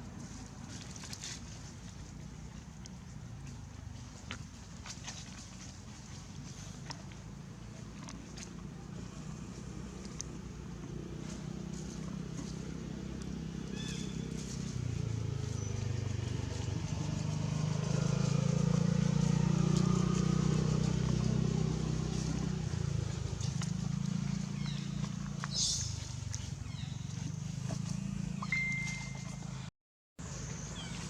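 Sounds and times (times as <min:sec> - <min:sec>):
motor vehicle engine running: 0:00.0 - 0:31.0
brief high chirp: 0:28.4 - 0:29.4.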